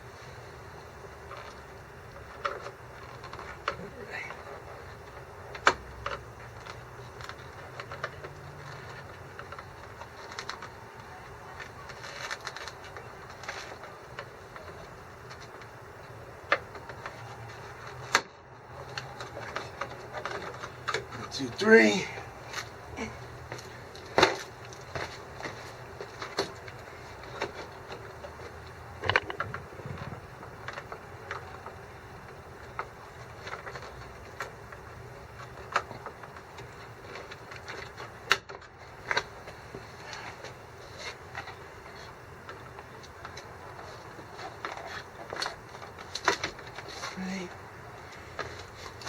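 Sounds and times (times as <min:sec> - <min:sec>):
low background hum: 0:00.0 - 0:49.0.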